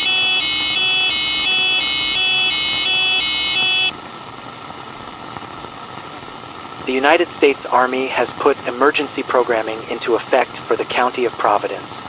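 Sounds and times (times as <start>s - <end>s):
two-pitch emergency alert tone: 0.0s - 3.9s
steady hiss: 4.8s - 11.8s.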